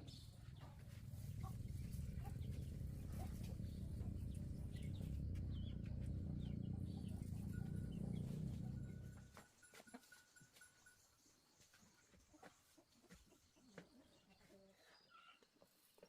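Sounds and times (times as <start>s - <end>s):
low rumble: 0.0s - 9.4s
chickens clucking: 0.0s - 10.8s, 11.6s - 16.0s.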